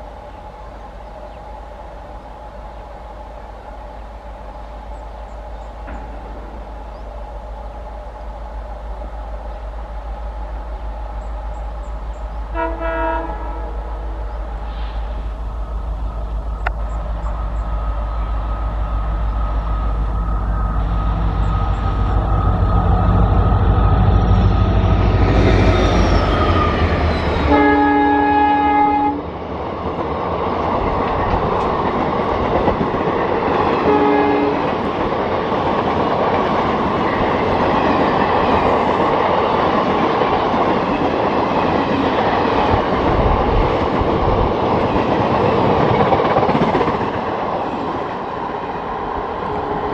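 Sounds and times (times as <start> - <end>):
train rumble: 0.0 - 49.9
train wheels clickety-clack: 4.9 - 7.1, 29.4 - 49.9
train horn blast: 12.5 - 15.0, 27.4 - 29.3, 33.8 - 34.8.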